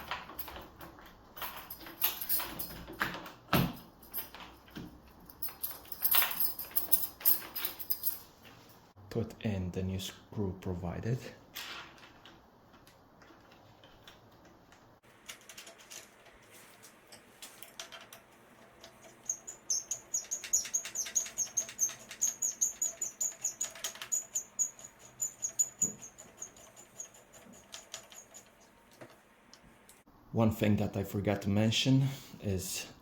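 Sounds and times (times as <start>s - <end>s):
thin high squeak: 19.0s - 28.7s.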